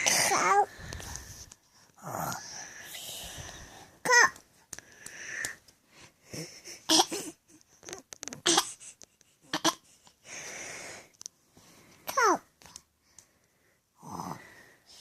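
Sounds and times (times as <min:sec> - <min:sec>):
child snoring and breathing: 0:02.0 - 0:03.9, 0:06.2 - 0:07.5, 0:14.0 - 0:15.0.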